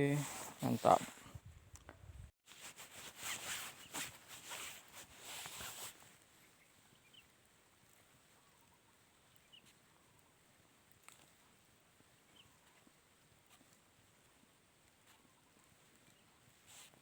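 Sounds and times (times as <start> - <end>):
rustling and handling noise: 0.0 - 1.3, 2.4 - 6.4, 16.5 - 17.0.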